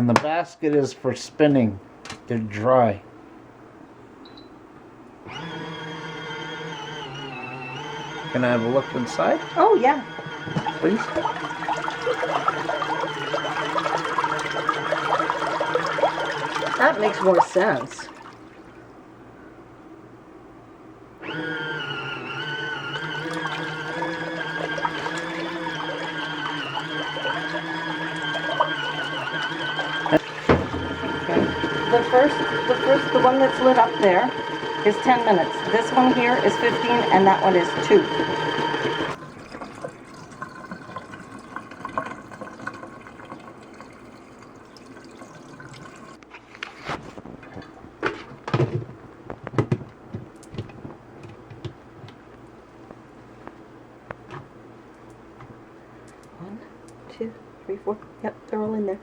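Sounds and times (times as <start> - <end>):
small electric motor humming: 5.3 - 15.0, 21.2 - 39.2
water and clothes sloshing: 10.2 - 18.8, 23.0 - 44.0, 44.7 - 49.2.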